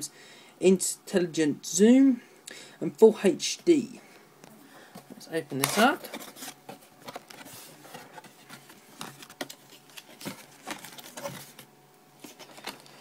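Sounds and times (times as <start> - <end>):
cardboard and plastic rustling: 4.8 - 13.0.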